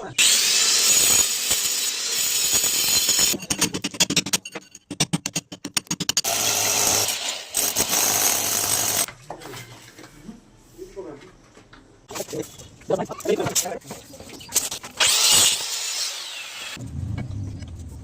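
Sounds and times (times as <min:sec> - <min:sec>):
power tool running: 0:00.2 - 0:03.3, 0:15.0 - 0:16.8.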